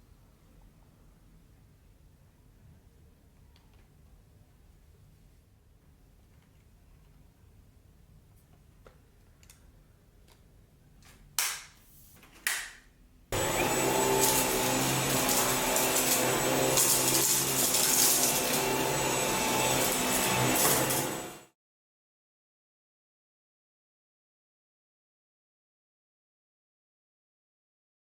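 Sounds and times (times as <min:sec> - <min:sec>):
vacuum cleaner whine: 0:13.4 - 0:21.6.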